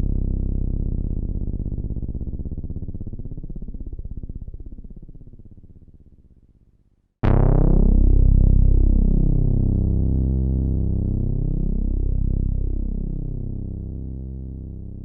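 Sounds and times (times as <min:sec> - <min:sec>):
deep synth bass tone: 0:07.2 - 0:15.0.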